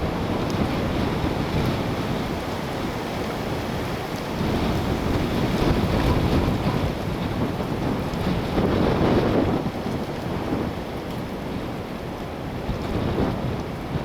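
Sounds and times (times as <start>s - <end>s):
wind buffeting microphone: 0.0s - 14.0s
wind gusting through trees: 0.0s - 14.0s.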